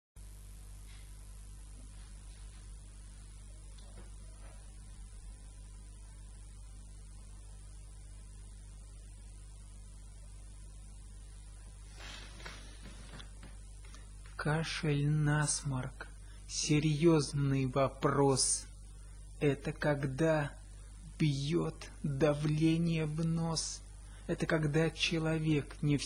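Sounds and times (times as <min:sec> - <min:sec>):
electrical mains hum: 0:00.2 - 0:26.0
faint hiss: 0:11.2 - 0:16.8
faint rustles: 0:11.8 - 0:14.3.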